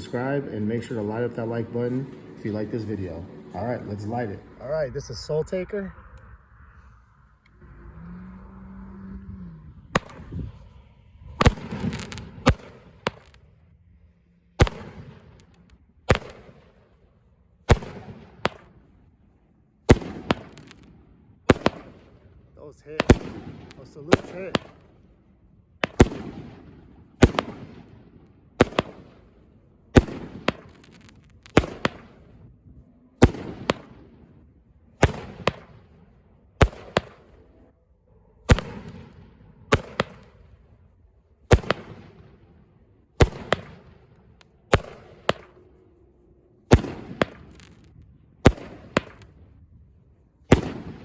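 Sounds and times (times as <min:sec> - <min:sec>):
firework bangs echoing: 0:00.0 - 0:04.6, 0:09.9 - 0:10.5, 0:11.3 - 0:13.5, 0:14.6 - 0:16.8, 0:17.7 - 0:19.0, 0:19.9 - 0:25.0, 0:25.8 - 0:32.6, 0:33.2 - 0:37.4, 0:38.5 - 0:40.7, 0:41.5 - 0:45.7, 0:46.7 - 0:49.5, 0:50.5 - 0:51.0.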